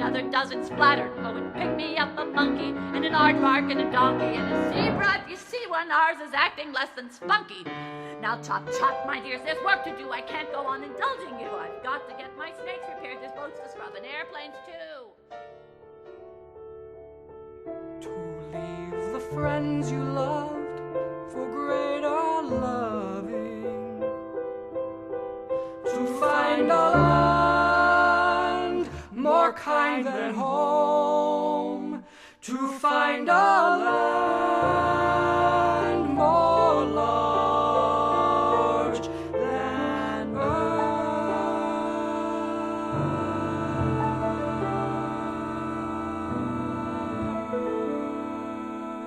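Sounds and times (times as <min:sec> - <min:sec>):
instrumental accompaniment: 0:00.0 - 0:05.4.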